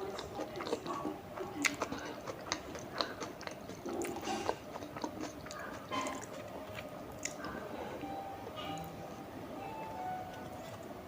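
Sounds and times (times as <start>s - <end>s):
chewing with wet mouth clicks: 0.0s - 7.7s.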